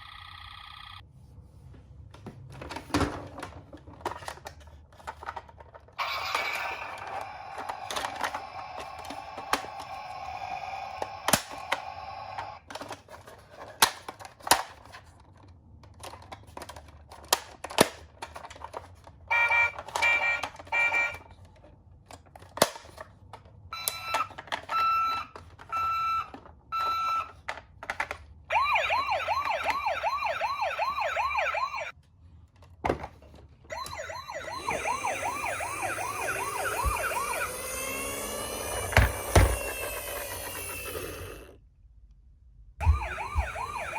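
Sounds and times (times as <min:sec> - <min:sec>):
toy siren beeping and wailing: 0:06.0 - 0:12.6, 0:19.3 - 0:21.2, 0:23.7 - 0:27.4, 0:28.5 - 0:31.9, 0:33.7 - 0:41.5, 0:42.8 - 0:43.9.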